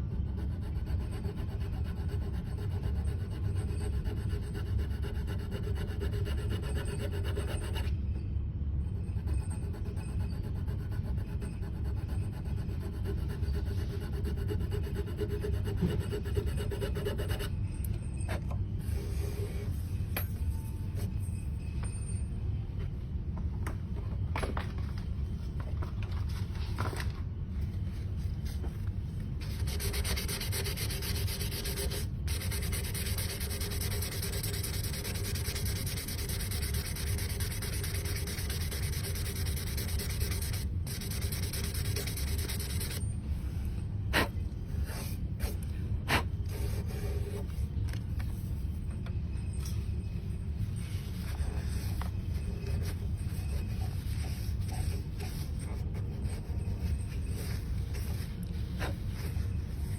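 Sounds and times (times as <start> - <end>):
sandpaper scratching on wood: 29.4 - 43.0.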